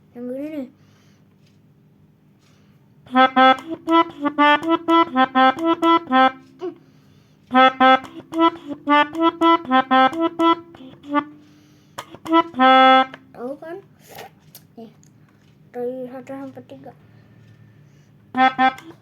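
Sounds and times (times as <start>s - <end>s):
melodica quick short notes: 3.1s - 6.8s, 7.5s - 13.2s, 18.4s - 19.0s.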